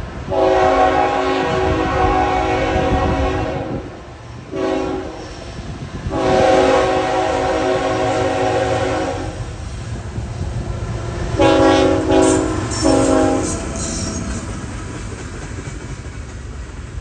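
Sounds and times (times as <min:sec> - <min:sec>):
train rumbling past: 0:00.0 - 0:17.0
locomotive air horn blasts: 0:00.3 - 0:05.3, 0:06.0 - 0:09.6, 0:11.4 - 0:14.2.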